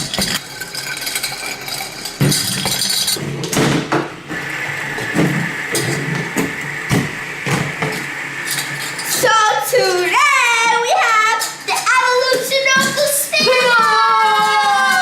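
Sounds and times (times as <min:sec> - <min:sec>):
toy spinner rattling and clicking: 0:00.0 - 0:03.2, 0:08.4 - 0:15.0
spinner high whir: 0:04.3 - 0:15.0.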